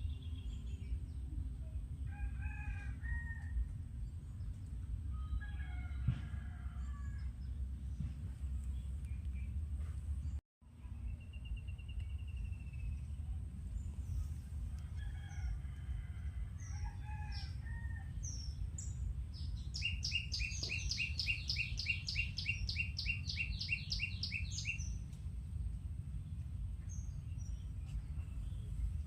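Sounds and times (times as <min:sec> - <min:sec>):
steady low rumble: 0:00.0 - 0:29.0
birds chirping: 0:18.2 - 0:25.1.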